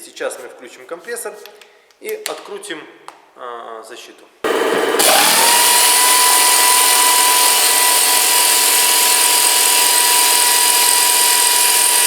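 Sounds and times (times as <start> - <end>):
pneumatic wrench hissing and whining: 4.5 - 12.0.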